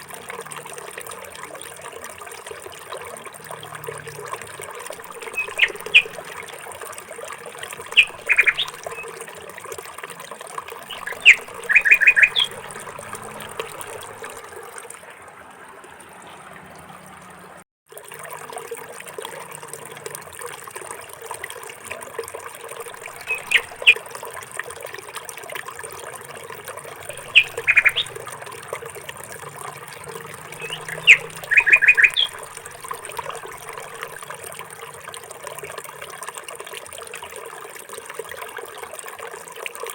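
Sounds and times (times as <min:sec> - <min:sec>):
bird chirps: 0:05.2 - 0:06.2, 0:07.8 - 0:09.2, 0:10.9 - 0:12.7, 0:23.1 - 0:24.0, 0:27.0 - 0:28.2, 0:30.1 - 0:32.6.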